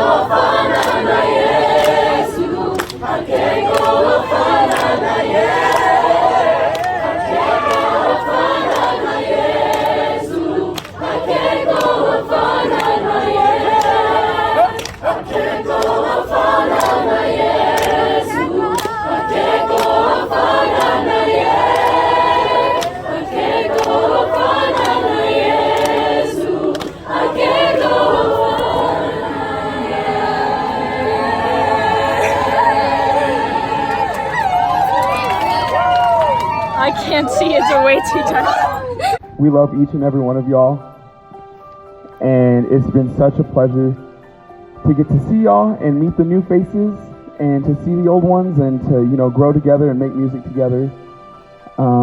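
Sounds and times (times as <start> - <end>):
youth choir singing: 0.0 - 39.2.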